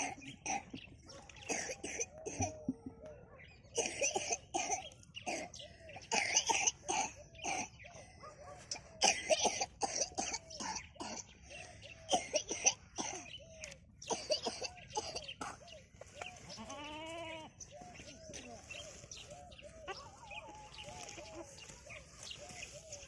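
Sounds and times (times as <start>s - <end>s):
goat kids bleating: 16.3s - 18.9s.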